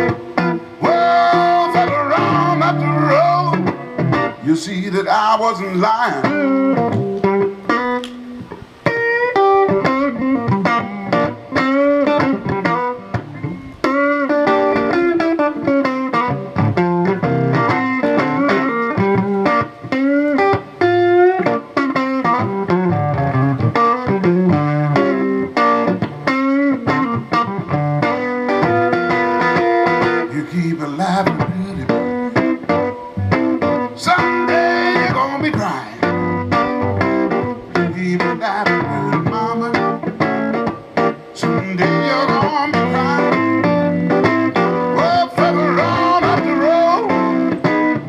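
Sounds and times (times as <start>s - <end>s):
person singing: 0.0s - 7.2s, 30.2s - 33.3s, 33.9s - 36.4s, 37.5s - 40.1s, 41.3s - 47.8s
blues guitar solo with string bends: 0.0s - 48.0s.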